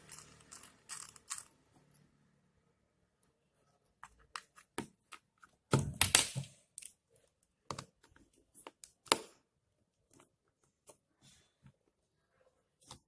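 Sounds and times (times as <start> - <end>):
parts clattering: 0.0 - 2.1.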